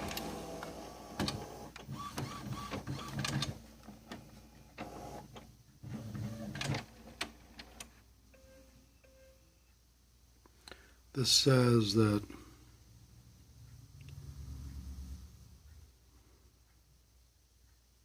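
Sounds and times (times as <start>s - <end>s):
printer motor whirring: 0.0s - 3.6s, 4.8s - 5.3s.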